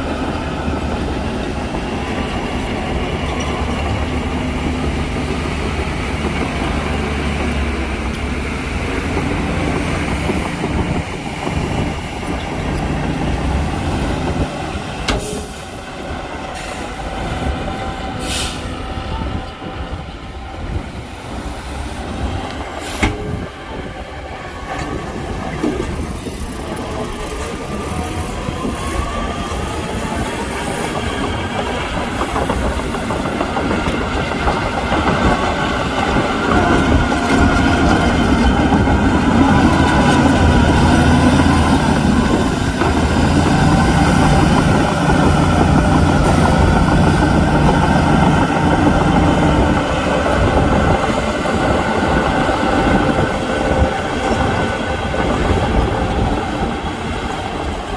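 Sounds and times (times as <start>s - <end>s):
diesel machinery engine rumble: 0.0s - 57.9s.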